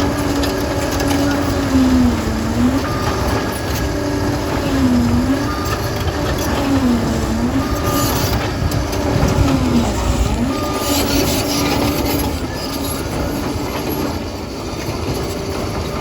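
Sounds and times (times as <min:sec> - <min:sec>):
bulldozer diesel engine whine: 0:00.0 - 0:16.0
steel tracks clattering: 0:00.0 - 0:16.0.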